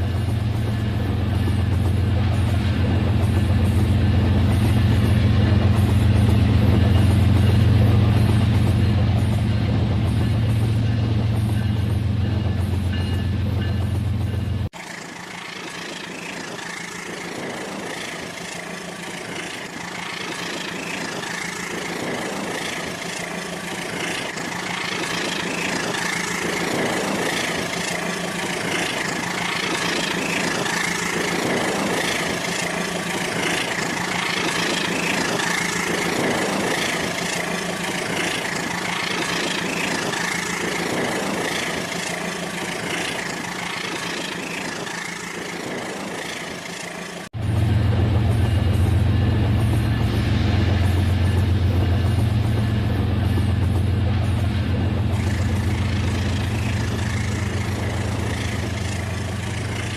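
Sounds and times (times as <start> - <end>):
toy train rattling on track: 14.8 - 47.3, 55.1 - 59.9.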